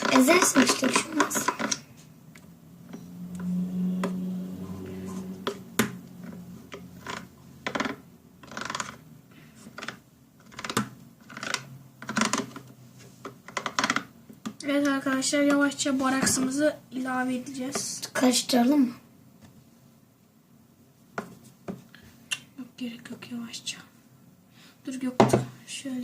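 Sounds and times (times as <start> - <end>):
spoon scraping plastic cup: 0.0 - 1.9, 6.2 - 9.0
low steady hum: 0.0 - 13.4.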